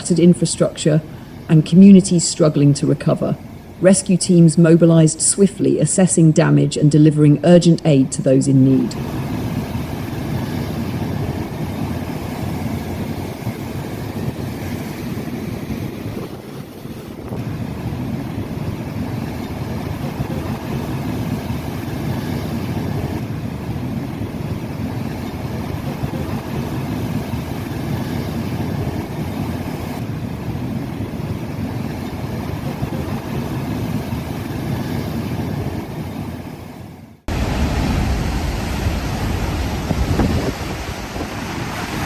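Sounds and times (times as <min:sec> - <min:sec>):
storm wind buffeting microphone: 0:08.9 - 0:36.5, 0:37.3 - 0:42.0.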